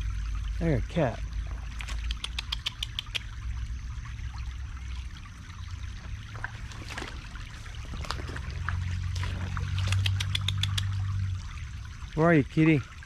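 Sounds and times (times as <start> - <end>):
creek water trickling: 0.0 - 13.0
low steady hum: 0.0 - 13.0
sharp clicks: 1.8 - 3.3, 9.8 - 11.0.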